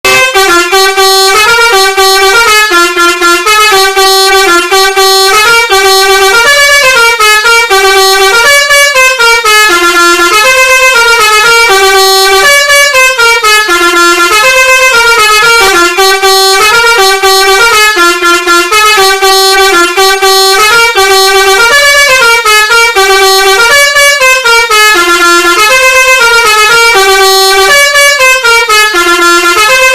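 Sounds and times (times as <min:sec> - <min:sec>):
musical bus horn melody: 0:00.0 - 0:29.9.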